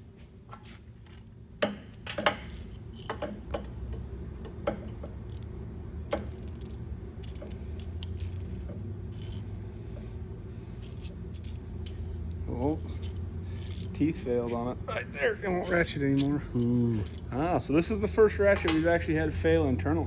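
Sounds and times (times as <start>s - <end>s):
low steady hum: 0.0s - 20.0s
ratchet metal clicks and snaps: 6.1s - 9.5s, 10.8s - 12.4s, 13.0s - 14.0s, 15.6s - 17.3s.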